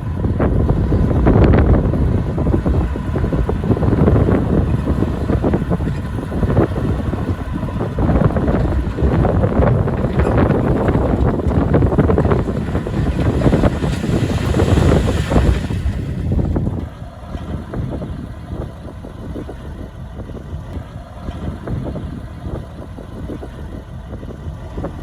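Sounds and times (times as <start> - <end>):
diesel machine running: 0.0 - 25.0
wind rumbling on microphone: 0.0 - 25.0
knocks and clatter: 1.1 - 16.9.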